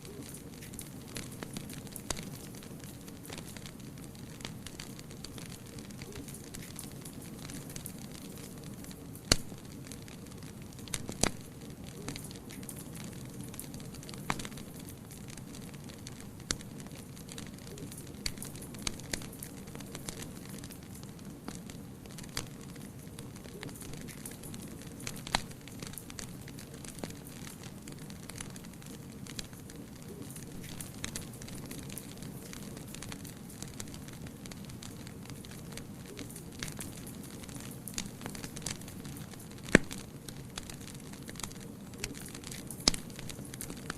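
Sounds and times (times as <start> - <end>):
fire crackling and popping: 0.0 - 43.9.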